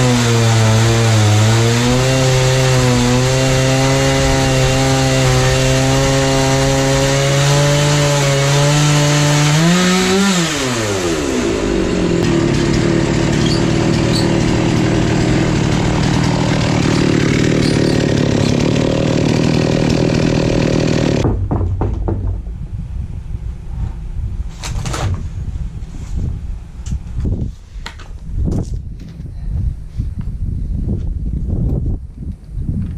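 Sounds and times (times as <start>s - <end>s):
chainsaw cutting wood: 0.0s - 22.2s
knocks: 21.2s - 22.7s.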